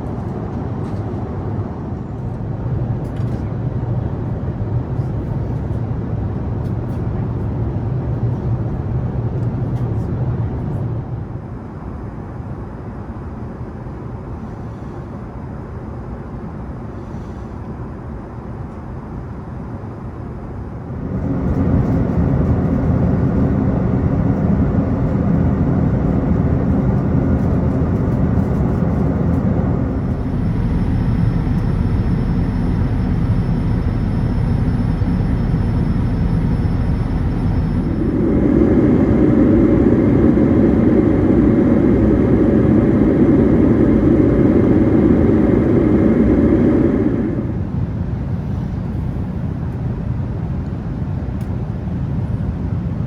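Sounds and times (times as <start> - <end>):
airplane cabin engine noise: 0.0 - 53.0
rushing air: 25.8 - 47.8.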